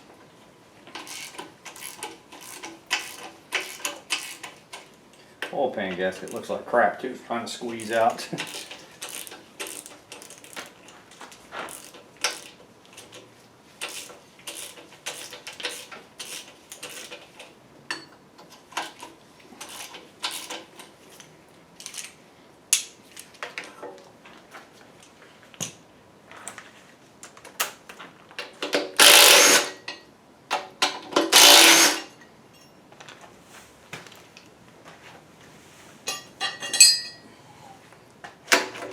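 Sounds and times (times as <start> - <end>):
hand ratchet clicking: 0.9 - 4.9, 7.8 - 10.7, 11.7 - 13.2, 13.8 - 17.2, 19.6 - 20.7, 28.6 - 29.8, 31.2 - 32.1.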